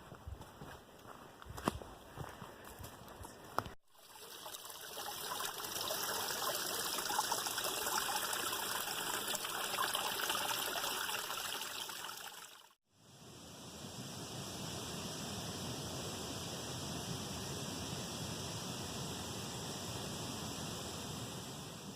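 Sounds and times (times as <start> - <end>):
stream trickling over rocks: 3.9 - 12.8.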